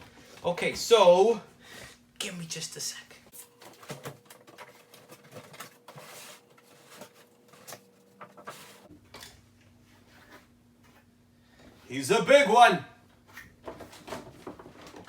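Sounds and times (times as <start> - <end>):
cardboard and plastic packaging rustling: 3.3 - 9.3, 13.2 - 15.0.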